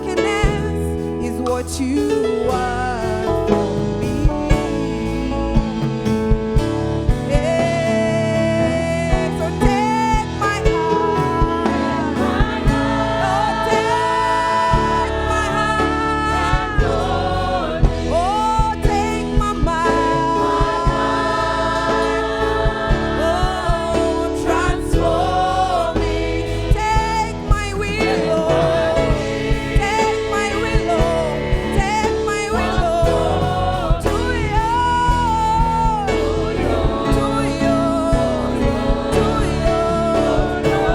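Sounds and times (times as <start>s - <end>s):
gospel choir singing: 0.0s - 40.9s
instrumental backing with beat: 9.0s - 40.9s.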